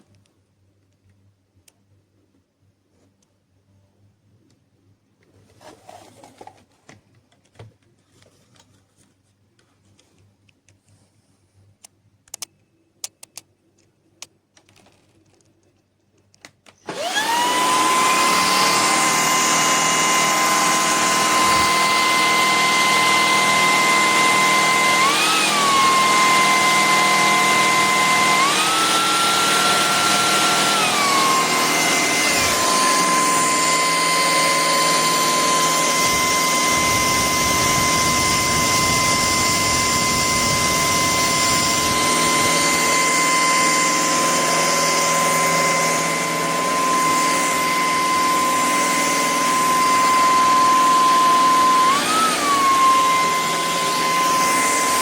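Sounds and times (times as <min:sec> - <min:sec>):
vacuum cleaner motor whine: 0:16.8 - 0:55.0.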